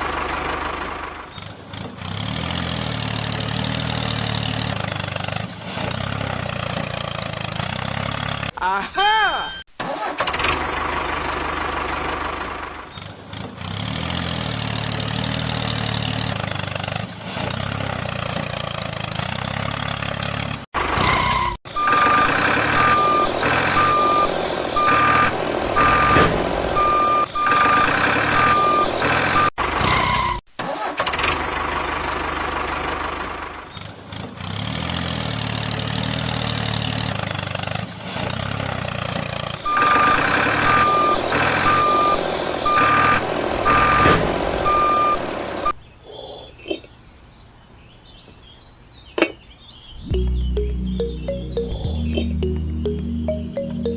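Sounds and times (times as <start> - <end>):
truck engine running: 0.0 - 8.5, 10.6 - 20.6, 50.1 - 53.9
reversing alarm beeping: 21.8 - 26.2, 26.8 - 29.5, 39.6 - 45.2.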